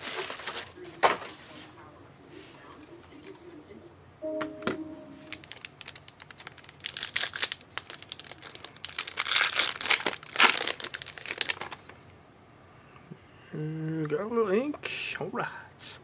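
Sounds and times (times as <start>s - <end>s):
card pack wrapper crinkling: 5.3s - 11.8s.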